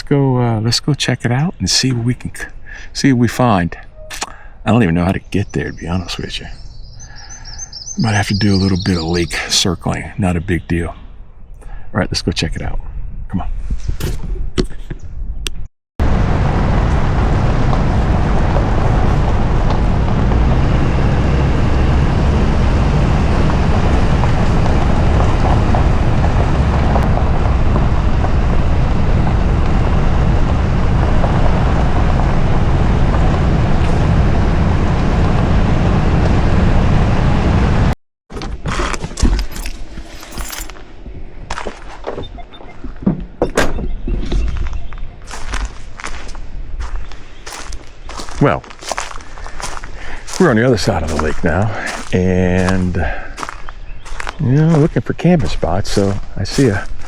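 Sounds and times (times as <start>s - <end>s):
vehicle engine and road noise: 1.4s - 11.4s, 16.0s - 57.0s
footsteps: 16.9s - 20.7s, 21.6s - 28.4s, 31.0s - 35.5s, 38.3s - 57.0s.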